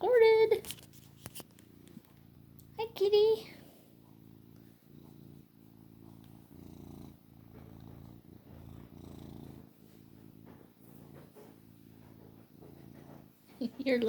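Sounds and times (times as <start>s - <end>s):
cat purring: 0.0s - 14.0s.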